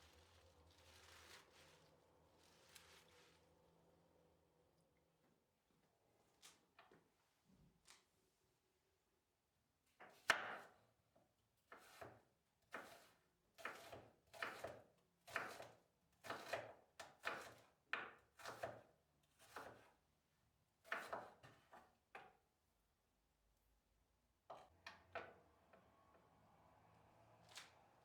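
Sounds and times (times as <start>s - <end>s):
knife chopping on cutting board: 11.8s - 17.7s, 18.4s - 19.9s, 20.9s - 21.8s.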